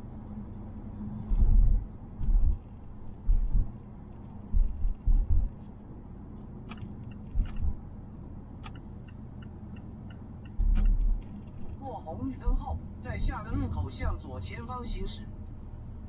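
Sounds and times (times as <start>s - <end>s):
car road rumble: 0.0s - 16.0s
sharp clicks and ticks: 3.3s - 5.6s, 6.6s - 7.8s, 8.6s - 11.7s
loud low thumps: 4.5s - 5.5s.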